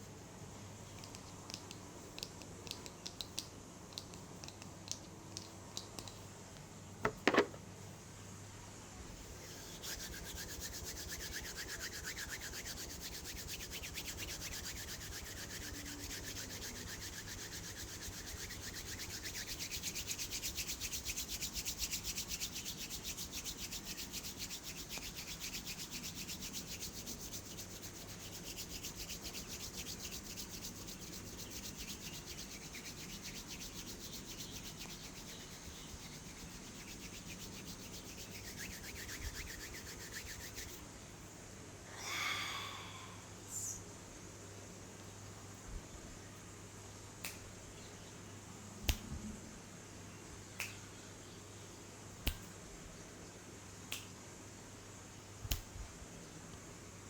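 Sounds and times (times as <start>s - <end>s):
hands rubbing: 9.4s - 40.9s.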